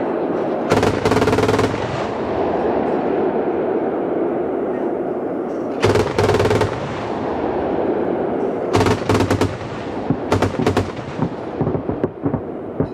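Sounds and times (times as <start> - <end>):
low rumble: 0.0 - 12.9
autocannon firing rapid bursts: 0.7 - 2.0, 5.8 - 7.0, 8.8 - 12.4.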